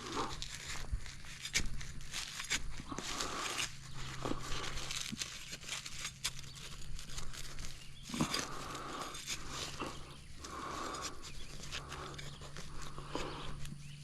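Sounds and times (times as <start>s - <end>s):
rustling: 0.0s - 14.0s
man breathing hard: 8.1s - 13.8s.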